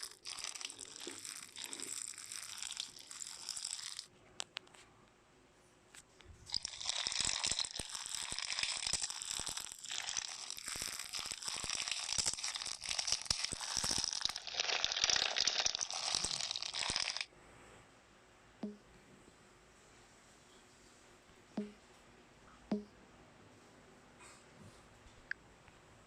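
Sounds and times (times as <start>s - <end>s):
slime crunching and crackling: 0.0s - 4.1s, 6.5s - 17.3s.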